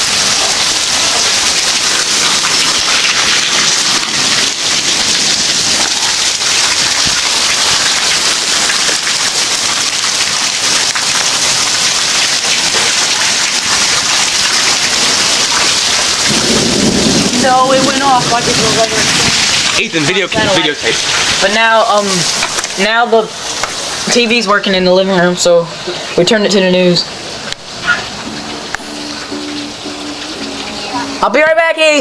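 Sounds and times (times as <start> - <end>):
heavy rain pouring: 0.0 - 32.0.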